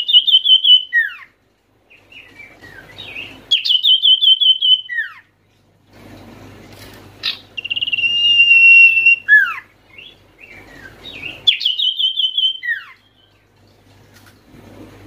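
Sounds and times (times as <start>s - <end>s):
bird whistled song: 0.0s - 1.3s, 1.9s - 5.3s, 7.2s - 13.4s
faint low hum: 0.0s - 15.0s.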